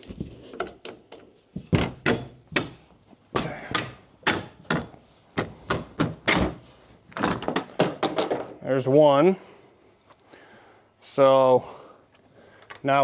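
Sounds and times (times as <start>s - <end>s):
sharp knocks on metal crossbar: 1.7s - 6.6s.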